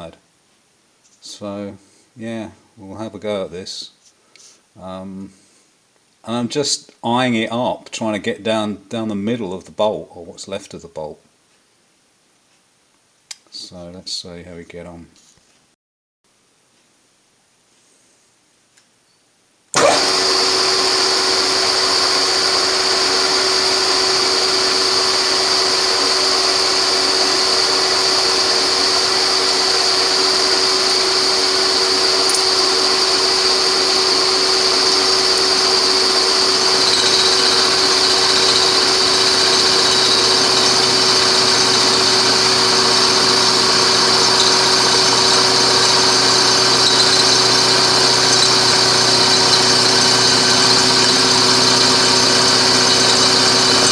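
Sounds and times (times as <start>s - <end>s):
milling machine whining: 19.8s - 53.9s.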